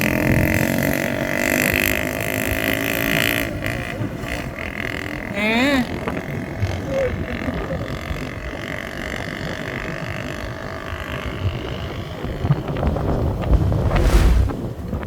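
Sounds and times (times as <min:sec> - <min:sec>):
vehicle rumbling: 0:13.5 - 0:14.8.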